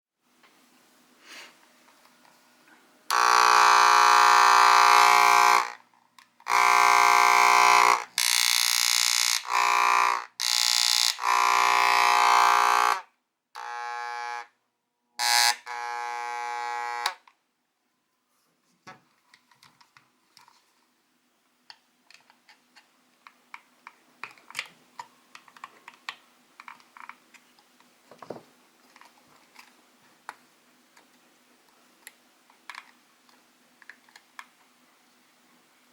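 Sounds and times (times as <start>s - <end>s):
electric massager buzzing: 3.1s - 5.8s, 6.5s - 14.5s, 15.2s - 17.2s.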